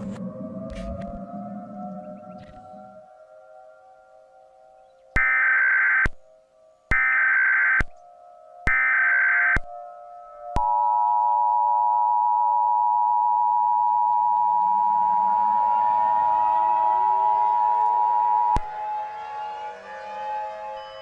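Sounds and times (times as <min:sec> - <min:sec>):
background drone with rising tones: 0:00.0 - 0:06.2, 0:06.9 - 0:21.0
two-tone alert alarm: 0:05.2 - 0:06.2, 0:06.9 - 0:08.0, 0:08.6 - 0:09.7, 0:10.5 - 0:18.8.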